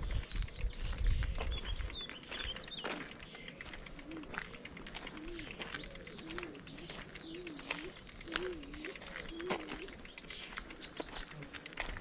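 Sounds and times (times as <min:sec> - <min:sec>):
songbirds chirping: 0:00.0 - 0:12.0
pigeon cooing: 0:04.0 - 0:10.0.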